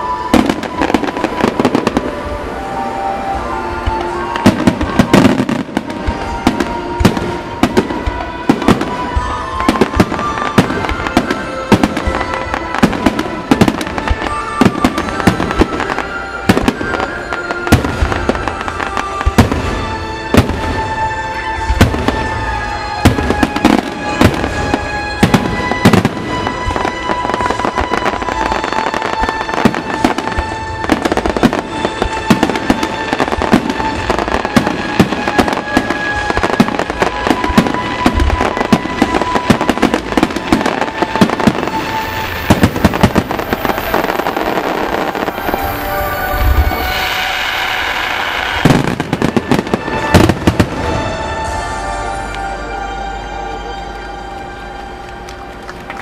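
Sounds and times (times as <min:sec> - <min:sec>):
fireworks bangs and crackles: 0:00.0 - 0:52.7
music playing: 0:00.0 - 0:56.0.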